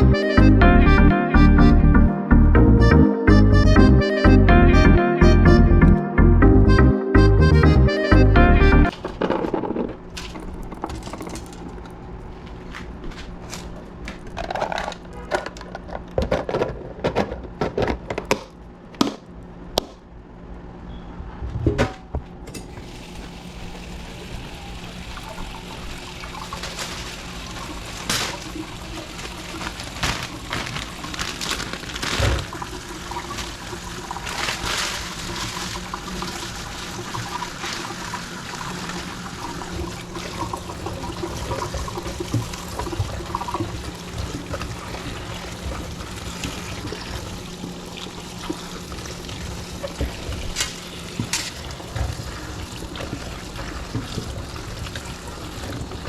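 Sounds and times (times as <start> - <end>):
knocks and clinks of items: 8.9 - 12.0
water running from a tap: 22.7 - 31.4, 32.4 - 56.0.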